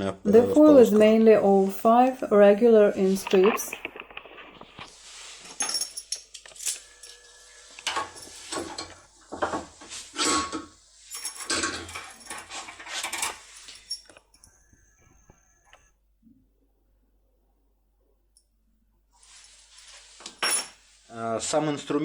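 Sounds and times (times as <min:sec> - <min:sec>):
small metal objects clinking: 0:05.4 - 0:08.9, 0:11.1 - 0:14.5, 0:19.4 - 0:20.8.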